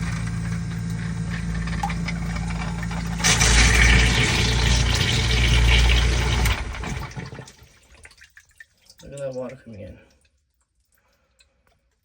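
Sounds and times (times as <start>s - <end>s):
sump pump motor hum: 0.0s - 8.1s
churning water rushing: 2.7s - 7.6s.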